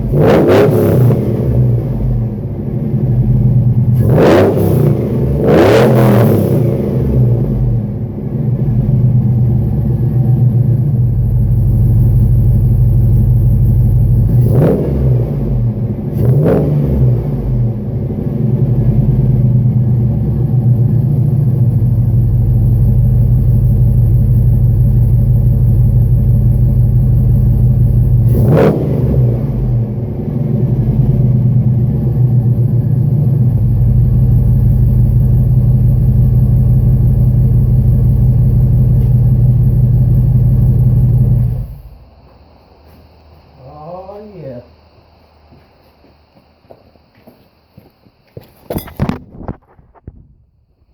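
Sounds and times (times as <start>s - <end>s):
engine throttle blips: 0.0s - 45.2s
engine idling loudly: 7.4s - 14.5s, 17.7s - 28.4s.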